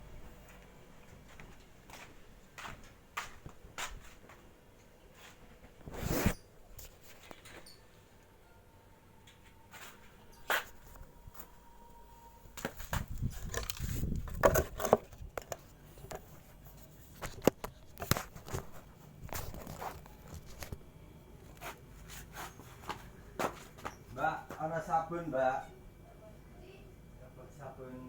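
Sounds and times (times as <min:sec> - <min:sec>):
rustling and scraping: 0:05.1 - 0:07.8, 0:12.6 - 0:20.8, 0:21.4 - 0:24.2.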